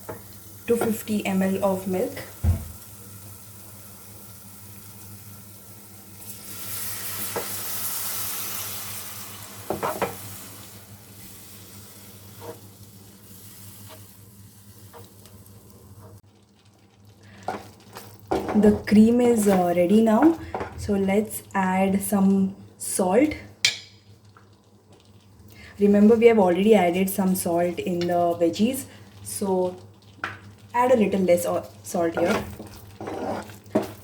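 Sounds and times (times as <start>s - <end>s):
milk sizzling in a hot pan: 0.0s - 20.6s, 23.6s - 34.0s
spoon clicking against pan: 23.6s - 24.0s.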